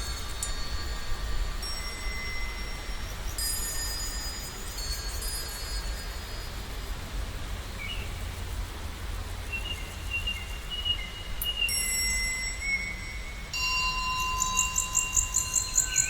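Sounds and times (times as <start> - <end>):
high ringing tones: 0.0 - 6.7, 11.4 - 16.0
low rumble of sea noise: 0.0 - 16.0
thin high tones: 11.3 - 16.0.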